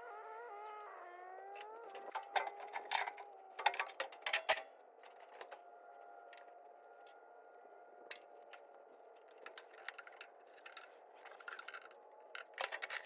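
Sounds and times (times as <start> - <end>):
metallic clicks and clanks: 1.9 - 5.6, 9.4 - 13.0.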